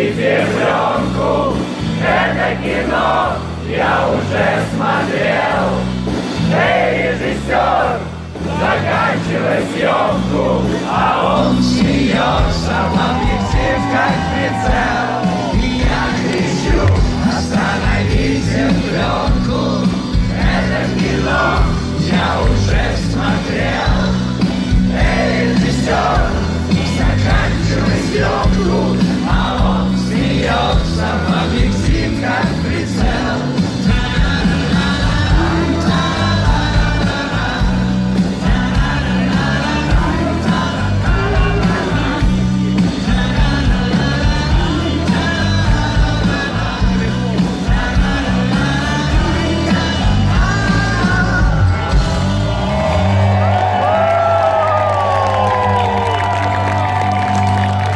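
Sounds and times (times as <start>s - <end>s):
live rock band playing: 0.0s - 57.9s
person singing: 25.0s - 52.3s.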